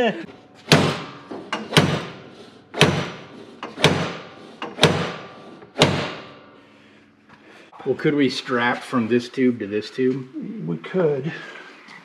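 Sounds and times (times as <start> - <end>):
heavy hammer blows ringing: 0.7 - 2.2, 2.8 - 6.5.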